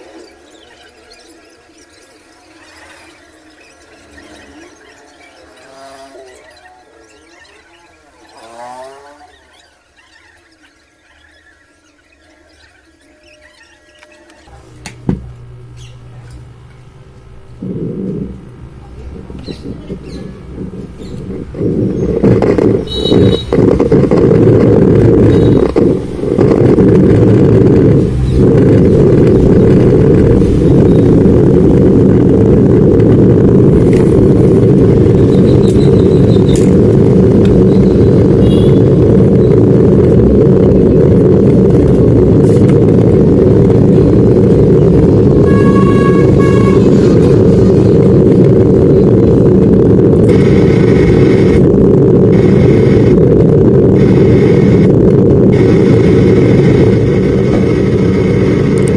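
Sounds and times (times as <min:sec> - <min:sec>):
subwoofer low rumbling: 0:14.4 - 0:58.9.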